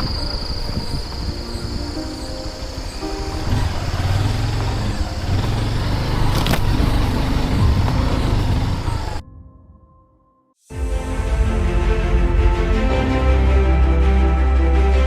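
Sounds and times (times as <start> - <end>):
motorcycle engine running: 3.1 - 9.2.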